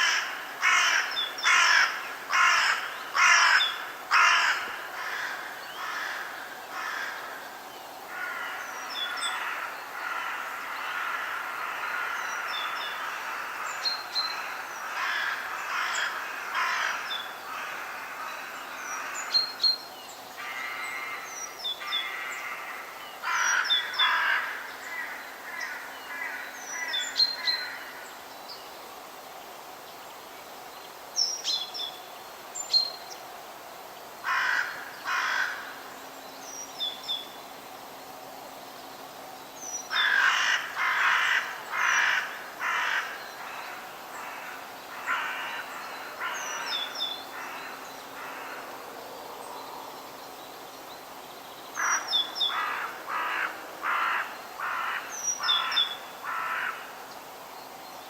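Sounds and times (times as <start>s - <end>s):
crows cawing: 0.0s - 7.5s, 8.1s - 19.4s, 20.4s - 28.0s, 34.2s - 35.8s, 39.9s - 48.9s, 51.8s - 57.0s
low forest hum: 0.0s - 58.0s.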